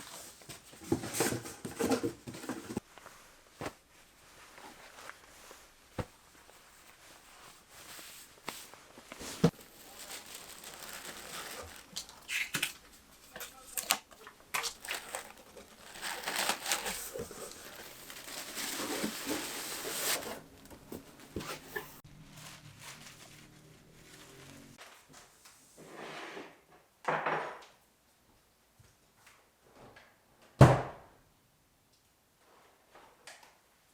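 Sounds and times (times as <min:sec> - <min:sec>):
material crinkling and rustling: 0:00.0 - 0:25.5.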